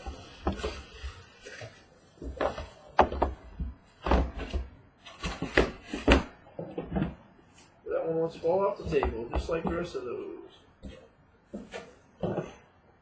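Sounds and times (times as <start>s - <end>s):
cardboard boxes knocking: 2.2s - 7.2s, 8.8s - 10.0s.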